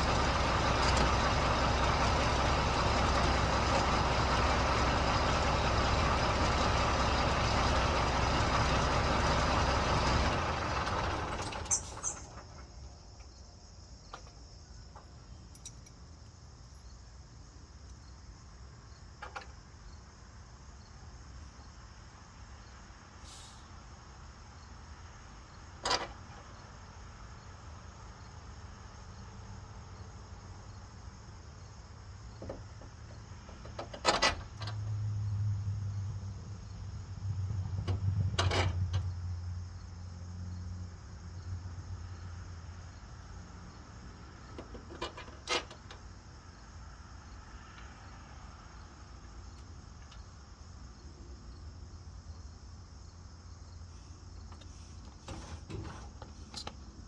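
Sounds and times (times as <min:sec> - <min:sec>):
truck engine idling: 0:00.0 - 0:13.1
crickets chirping: 0:00.0 - 0:57.0.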